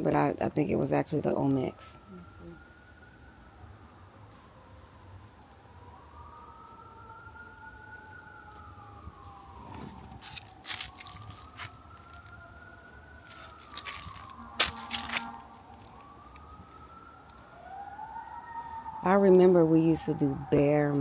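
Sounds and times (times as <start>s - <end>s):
distant siren wailing: 0.0s - 21.0s
sharp crunches and clicks: 9.3s - 12.6s, 13.2s - 17.4s.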